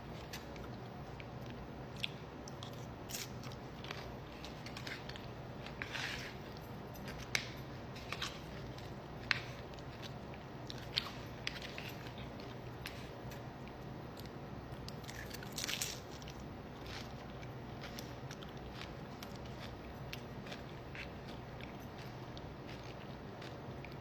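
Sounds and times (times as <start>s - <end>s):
wet chewing: 0.1s - 24.0s
crunching chips: 14.2s - 24.0s.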